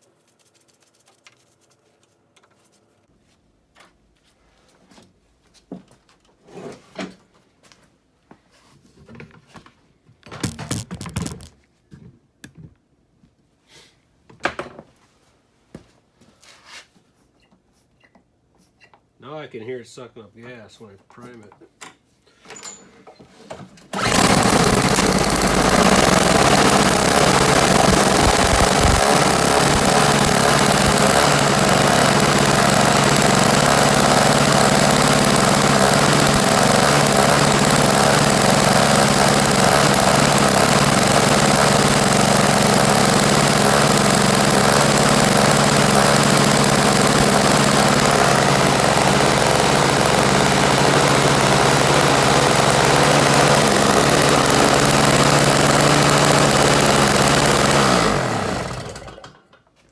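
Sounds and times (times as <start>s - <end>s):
snowblower engine starting and running: 10.4s - 11.5s, 23.9s - 59.5s.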